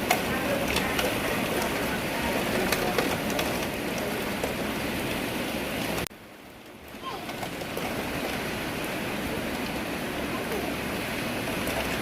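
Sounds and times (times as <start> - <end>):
heavy rain hissing: 0.0 - 12.0.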